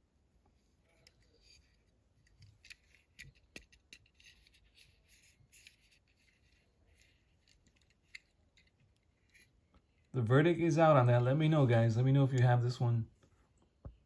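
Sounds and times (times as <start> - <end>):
toy car clicks: 2.2 - 6.3.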